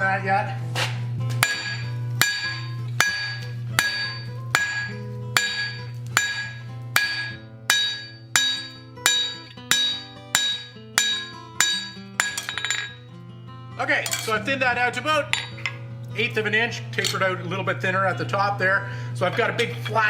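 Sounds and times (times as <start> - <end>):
hammer striking steel on anvil: 1.4 - 13.0, 14.0 - 14.4, 15.3 - 15.8, 17.0 - 17.2.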